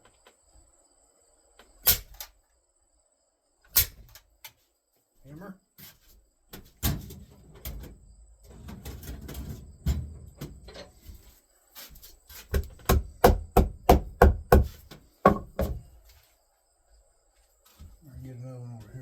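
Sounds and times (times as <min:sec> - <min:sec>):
hammer striking wood: 0:12.5 - 0:15.8.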